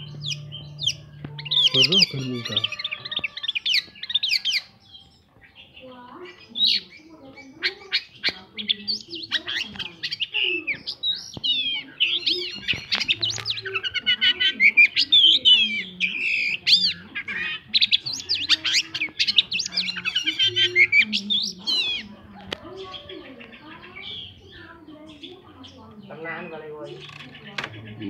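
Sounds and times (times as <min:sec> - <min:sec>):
bird singing chirps and whistles: 0:00.0 - 0:22.1.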